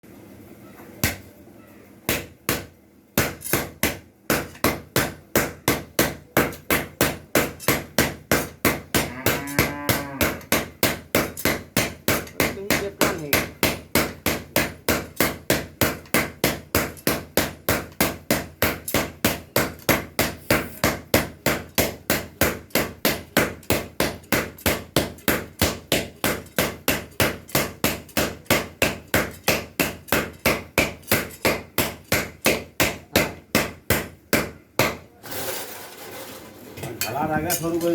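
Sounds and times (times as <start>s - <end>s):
hammer striking metal bowl: 2.1s - 35.1s.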